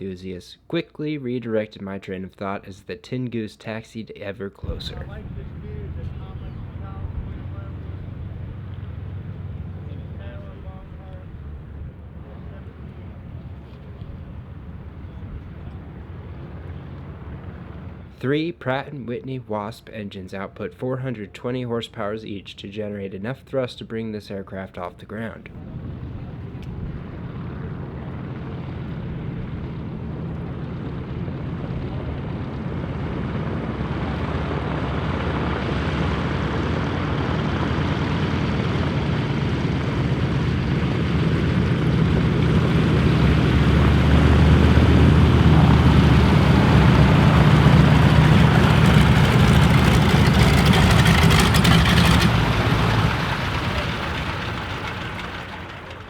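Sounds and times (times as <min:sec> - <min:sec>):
aircraft radial engines running: 0:04.6 - 0:18.2, 0:25.5 - 0:56.0.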